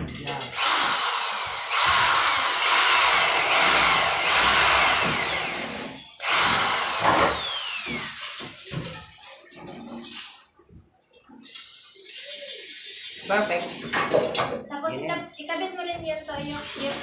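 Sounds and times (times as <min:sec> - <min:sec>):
power drill whining in bursts: 0:00.5 - 0:08.4.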